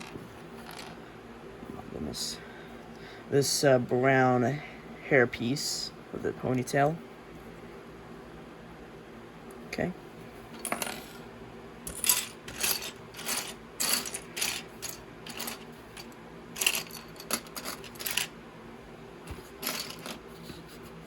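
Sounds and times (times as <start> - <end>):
plastic pieces clattering: 0.0 - 1.0, 11.9 - 18.3, 19.6 - 20.2.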